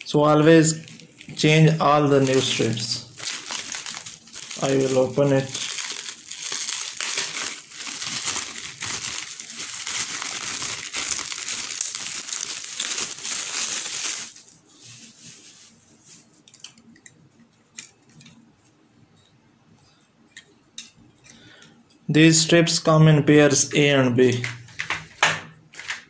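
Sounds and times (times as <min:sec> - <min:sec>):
plastic packaging crinkling: 0:00.0 - 0:16.2.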